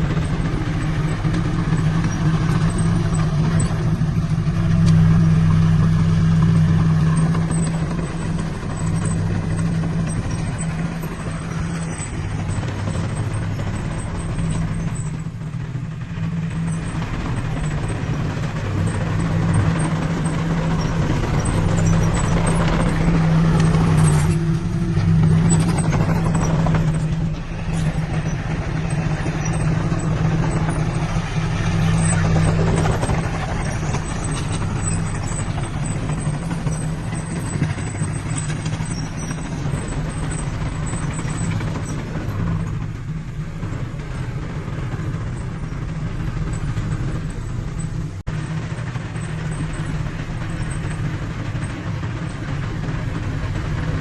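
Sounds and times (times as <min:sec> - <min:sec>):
heavy diesel engine running: 0:00.0 - 0:54.0.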